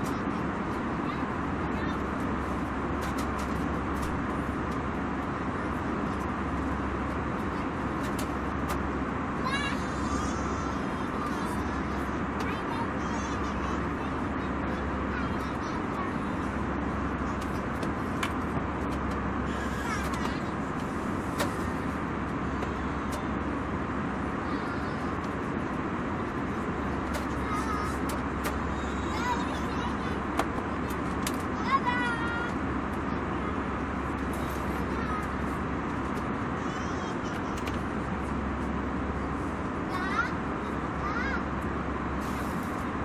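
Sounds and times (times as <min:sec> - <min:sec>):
airliner cabin engine and air noise: 0:00.0 - 0:43.0.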